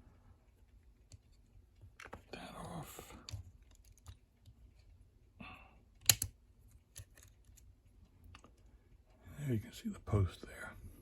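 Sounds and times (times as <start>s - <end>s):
small metal parts clicking: 6.0s - 6.3s.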